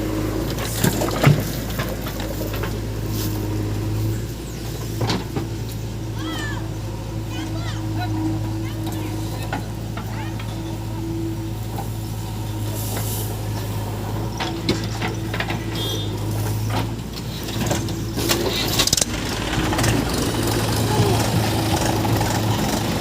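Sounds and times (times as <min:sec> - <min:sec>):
heavy diesel engine running: 0:00.0 - 0:23.0
knocks and clatters: 0:13.6 - 0:23.0.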